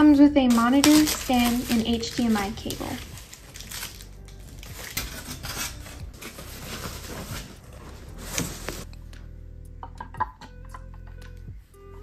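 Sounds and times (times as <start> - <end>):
background music: 0.0 - 12.0
packaging rubbing and scraping: 0.5 - 8.9.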